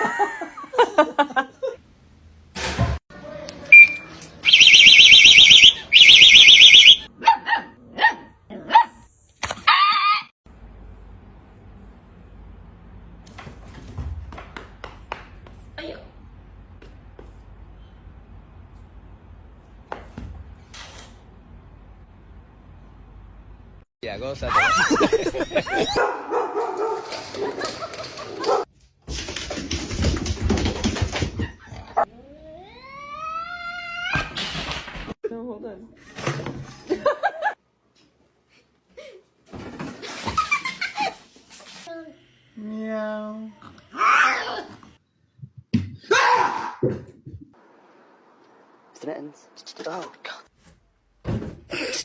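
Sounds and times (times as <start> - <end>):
warbling electronic alarm: 3.8 - 7.0
dog whimpering and yipping: 25.4 - 26.0
dog barking: 25.9 - 27.6, 28.4 - 28.7.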